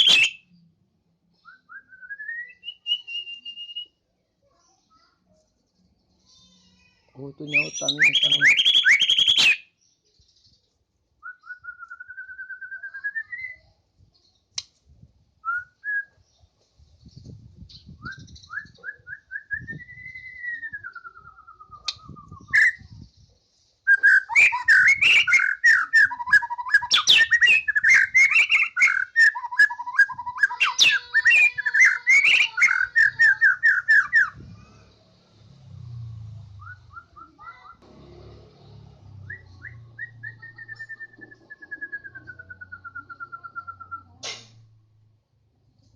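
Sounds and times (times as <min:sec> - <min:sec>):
songbird singing: 0:00.0 - 0:04.0, 0:07.2 - 0:14.7, 0:15.4 - 0:37.8, 0:39.1 - 0:44.2.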